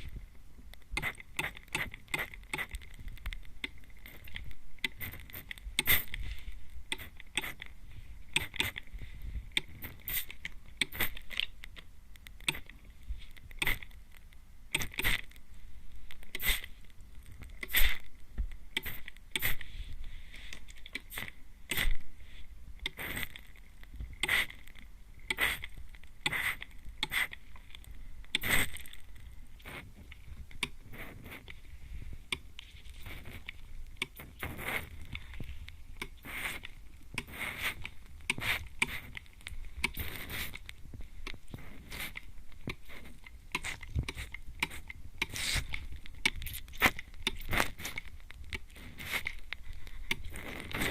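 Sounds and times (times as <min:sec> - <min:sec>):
spray bottle squirts: 0:10.1 - 0:10.3, 0:16.4 - 0:16.7, 0:18.8 - 0:19.6.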